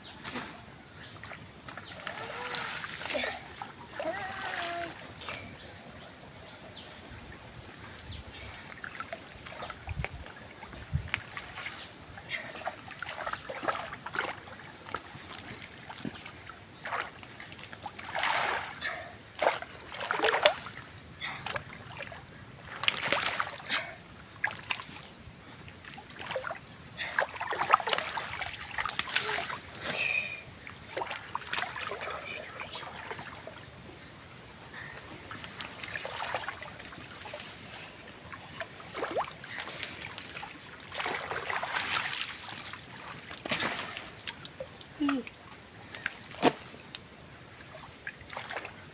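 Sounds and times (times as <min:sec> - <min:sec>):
water splashing and sloshing: 0:00.0 - 0:48.9
steady wash of water: 0:01.8 - 0:05.6, 0:16.8 - 0:29.8, 0:30.5 - 0:48.9.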